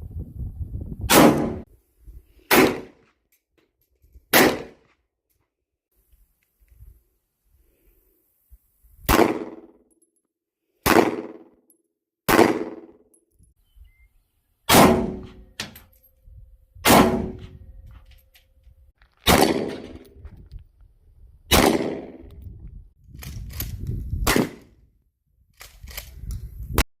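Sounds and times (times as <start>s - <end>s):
gunshots: 1.1s - 1.6s, 2.5s - 3.0s, 4.3s - 4.8s, 9.1s - 9.7s, 10.8s - 11.5s, 12.3s - 12.9s, 14.7s - 15.4s, 16.9s - 17.5s, 19.2s - 20.0s, 21.5s - 22.2s, 24.2s - 24.7s.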